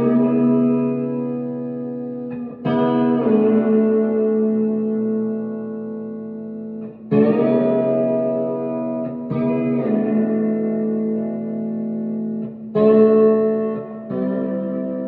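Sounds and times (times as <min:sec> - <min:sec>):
electric guitar chords strummed: 0:00.0 - 0:15.0.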